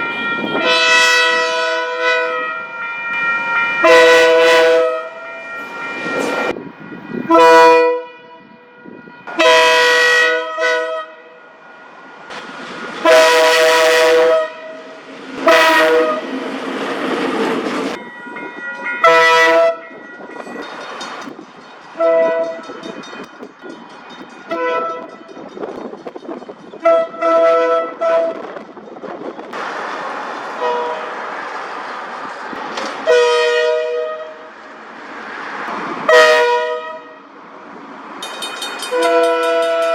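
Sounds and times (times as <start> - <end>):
train horn blasts: 0.0 - 11.6, 13.0 - 16.3, 19.0 - 19.9, 22.0 - 22.9, 24.5 - 25.3, 26.8 - 28.6, 30.6 - 31.2, 33.0 - 34.5, 36.1 - 37.3, 38.9 - 39.9
trains passing on rails: 0.0 - 39.9.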